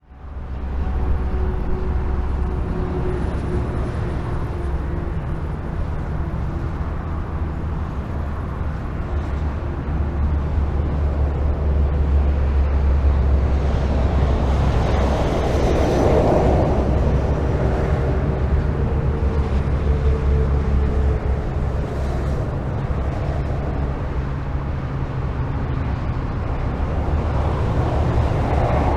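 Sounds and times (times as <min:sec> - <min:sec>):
highway traffic rumble: 0:00.0 - 0:28.9.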